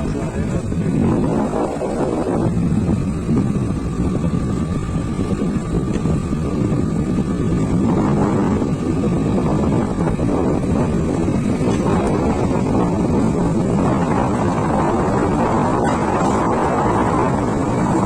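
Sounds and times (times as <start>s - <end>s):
motor scooter engine running: 0.0s - 18.0s
wind rumbling on microphone: 0.0s - 18.0s.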